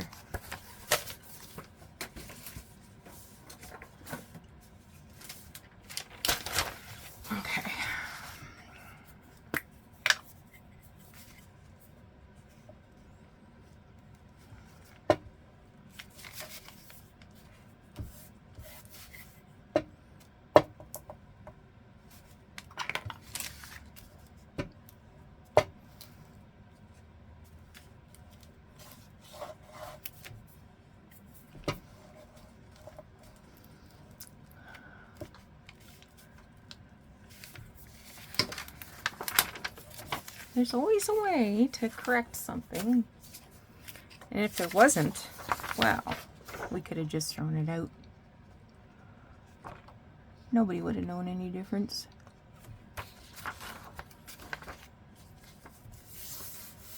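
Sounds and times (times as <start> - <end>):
paper rustling and sliding: 0.0 - 7.3, 15.9 - 19.4, 22.1 - 24.4, 37.2 - 46.8, 52.6 - 56.9.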